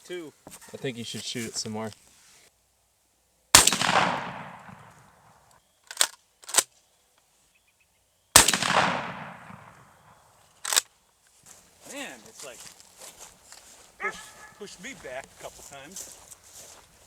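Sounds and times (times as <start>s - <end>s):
shotgun shot echoing: 3.6s - 5.3s, 8.4s - 10.8s.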